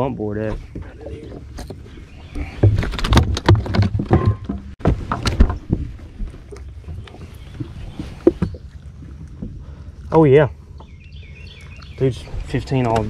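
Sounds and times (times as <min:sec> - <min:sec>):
knocks and clatter on a boat deck: 0:00.4 - 0:08.6.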